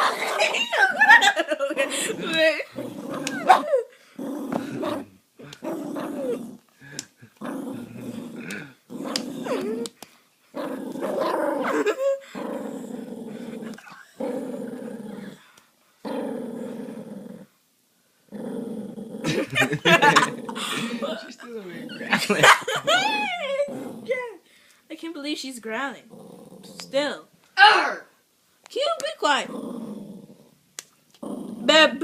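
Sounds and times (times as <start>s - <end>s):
dog growling: 1.8s - 9.9s, 10.5s - 17.5s, 18.3s - 24.2s, 26.1s - 27.0s, 29.4s - 30.6s, 31.2s - 31.9s.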